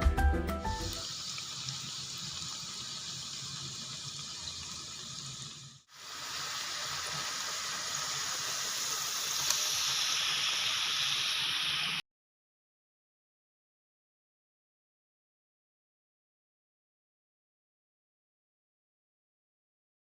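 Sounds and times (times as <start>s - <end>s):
dough frying in hot oil: 1.0s - 12.0s.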